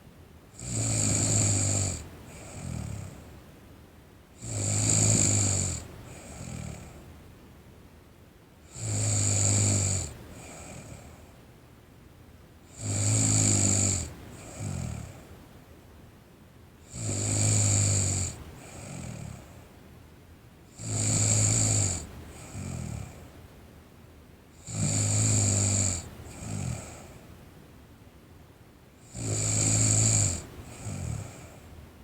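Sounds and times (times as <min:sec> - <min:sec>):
girl snoring: 0:00.6 - 0:03.2, 0:04.4 - 0:07.0, 0:08.7 - 0:11.1, 0:12.8 - 0:15.2, 0:16.9 - 0:19.5, 0:20.8 - 0:23.2, 0:24.6 - 0:27.1, 0:29.1 - 0:31.6.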